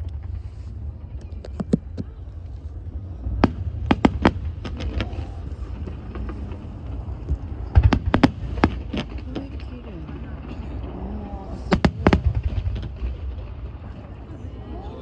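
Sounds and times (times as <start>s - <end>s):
fireworks popping and crackling: 0.0s - 15.0s
steady low rumble: 0.0s - 15.0s.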